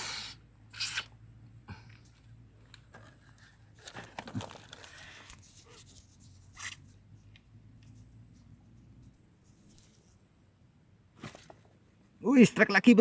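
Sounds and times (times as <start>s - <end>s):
rustling and handling noises: 2.0s - 10.3s, 11.1s - 12.1s.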